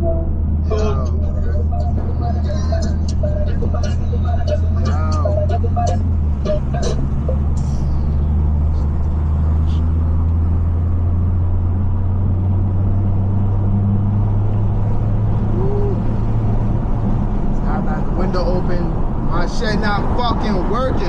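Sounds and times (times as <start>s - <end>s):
car exhaust droning: 0.0s - 21.0s.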